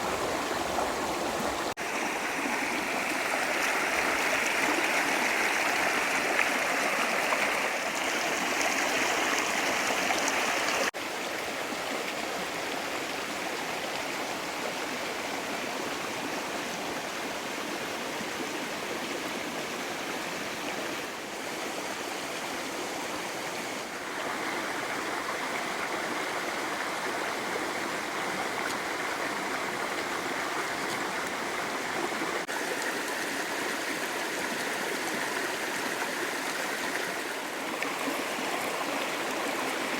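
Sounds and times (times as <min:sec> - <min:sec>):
creek water running over rocks: 0:00.0 - 0:39.9.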